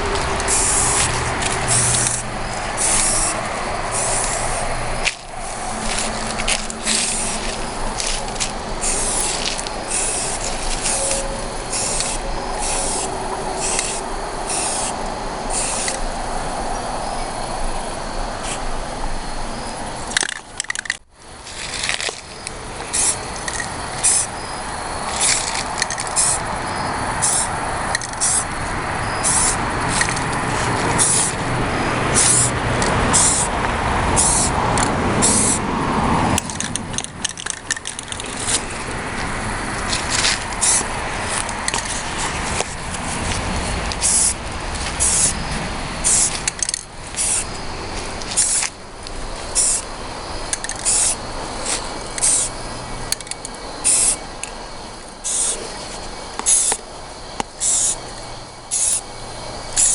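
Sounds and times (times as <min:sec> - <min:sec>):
spray can hissing: 0:00.0 - 0:16.0, 0:21.5 - 0:24.4, 0:25.1 - 0:26.5, 0:27.2 - 0:28.6, 0:29.2 - 0:31.5, 0:32.1 - 0:33.5, 0:34.1 - 0:35.6, 0:37.4 - 0:38.8, 0:39.8 - 0:48.8, 0:49.5 - 0:49.9, 0:50.5 - 0:52.6, 0:53.8 - 0:54.2, 0:55.2 - 0:55.6, 0:56.4 - 0:56.8, 0:57.6 - 0:58.0, 0:58.7 - 0:59.0
steady background rumble: 0:00.0 - 0:59.9.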